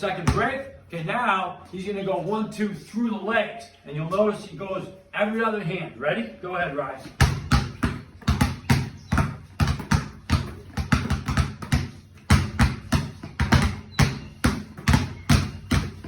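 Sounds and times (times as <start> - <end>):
basketballs bouncing on floor: 0.0 - 0.8, 7.1 - 16.0.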